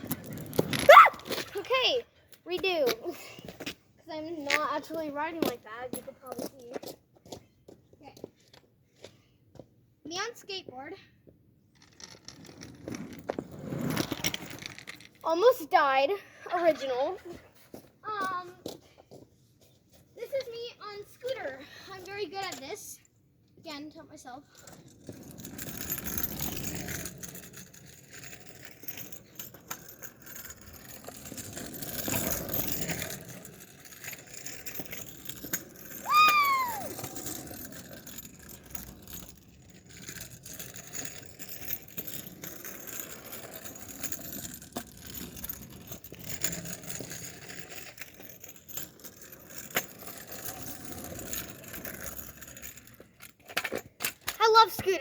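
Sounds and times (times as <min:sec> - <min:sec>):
kick scooter rattling over pavement: 0:24.6 - 0:55.0
short high squeal: 0:36.0 - 0:36.9.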